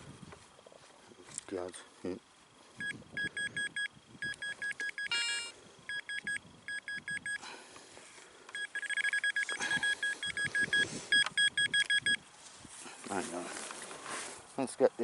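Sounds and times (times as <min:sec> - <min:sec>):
metal detector beeping: 0:02.8 - 0:07.4, 0:08.5 - 0:12.2
metal detector chirp: 0:02.8 - 0:07.4, 0:08.5 - 0:12.2.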